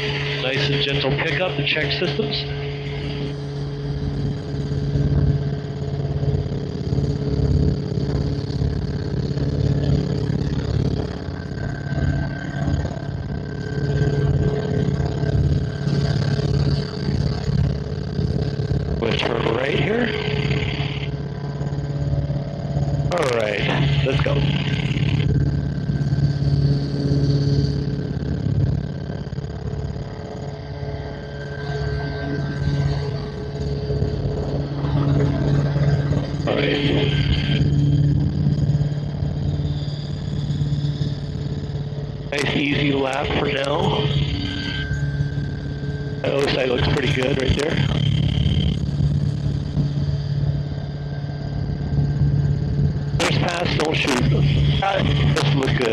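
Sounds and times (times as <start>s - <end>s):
helicopter engine and rotor: 0.0s - 55.9s.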